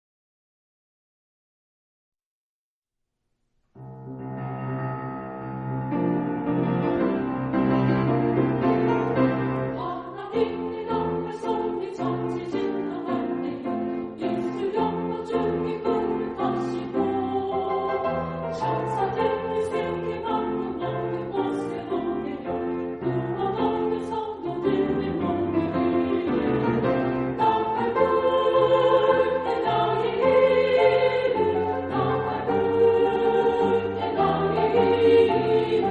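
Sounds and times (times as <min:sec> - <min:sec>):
piano accompaniment: 0:03.8 - 0:35.9
women's choir singing: 0:08.8 - 0:35.9.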